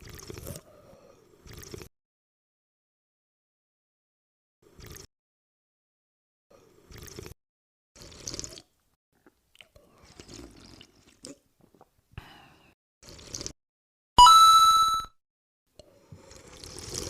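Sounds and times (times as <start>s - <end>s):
tea slurping: 0.0s - 0.7s, 1.3s - 1.9s, 4.6s - 5.1s, 6.6s - 7.4s, 8.0s - 8.7s, 9.6s - 11.5s, 13.0s - 13.6s, 15.9s - 17.0s.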